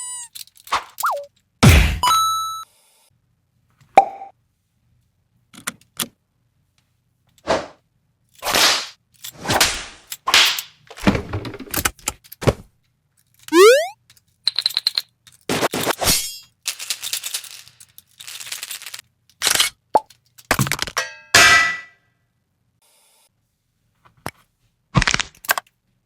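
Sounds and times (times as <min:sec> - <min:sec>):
cartoon pop: 0:13.5 - 0:14.0
short beep: 0:13.5 - 0:14.0.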